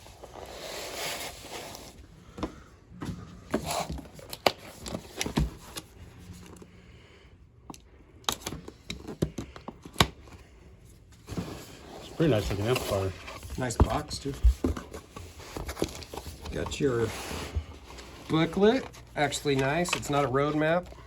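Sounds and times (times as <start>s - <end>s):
cardboard rustling scrape: 0.0s - 2.1s, 11.2s - 21.0s.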